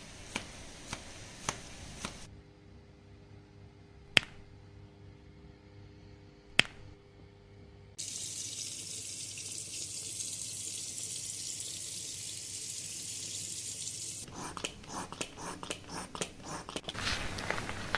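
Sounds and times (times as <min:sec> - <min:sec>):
tap water running into basin: 0:08.0 - 0:16.8.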